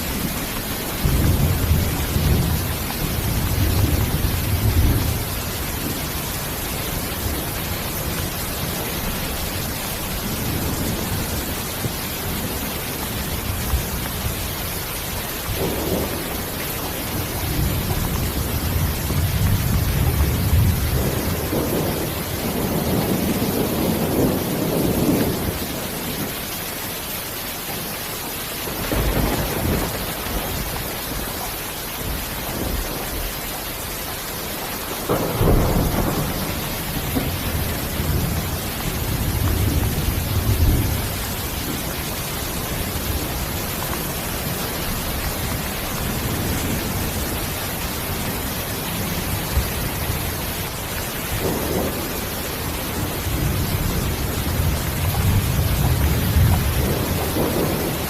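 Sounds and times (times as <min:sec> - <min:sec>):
distant thunder rolling: 0:00.0 - 0:26.4, 0:28.6 - 0:33.4, 0:34.6 - 0:58.0
steady rain hiss: 0:00.0 - 0:58.0.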